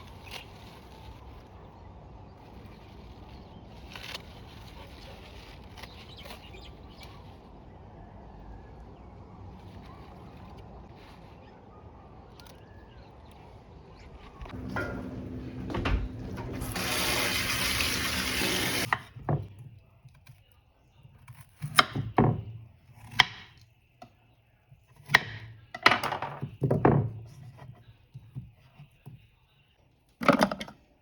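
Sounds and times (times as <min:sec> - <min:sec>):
utensils and dishes clattering: 0:14.5 - 0:18.9
kitchen tap running: 0:14.6 - 0:18.9.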